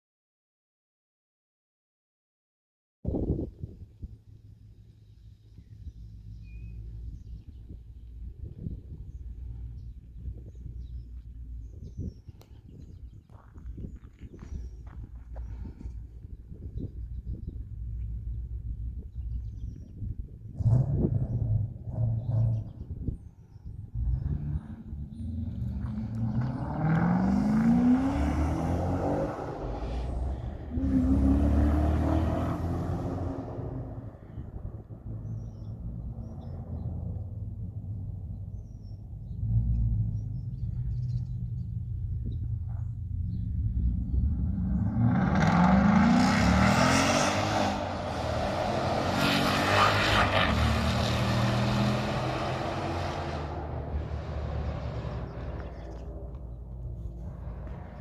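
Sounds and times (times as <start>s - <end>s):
car engine revving with loud exhaust: 14.4s - 58.0s.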